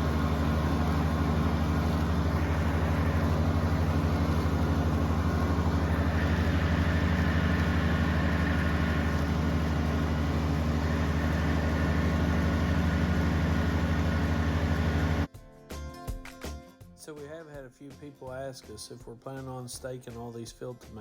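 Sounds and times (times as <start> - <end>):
tractor engine running: 0.0 - 15.3.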